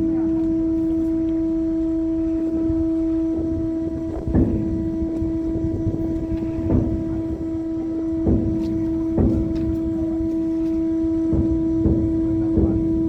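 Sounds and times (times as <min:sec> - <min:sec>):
ship machinery drone: 0:00.0 - 0:13.0
dull thumps: 0:03.0 - 0:13.0.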